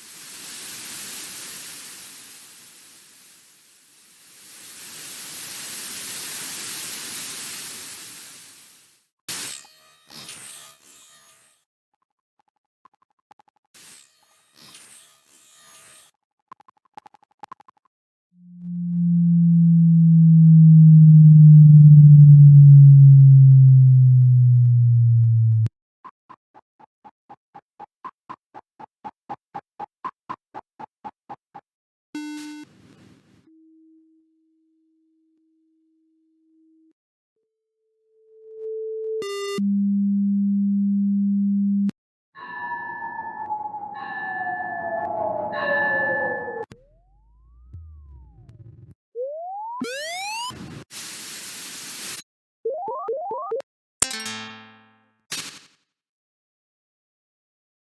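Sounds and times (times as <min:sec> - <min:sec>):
low electronic tone sliding down: 0:18.4 - 0:25.7, 0:42.4 - 0:50.5.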